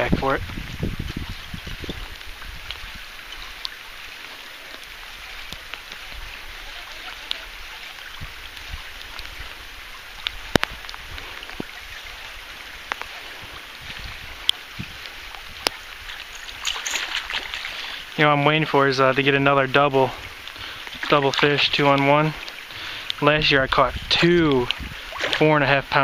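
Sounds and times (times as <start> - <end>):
steady rain falling: 0.0 - 26.0.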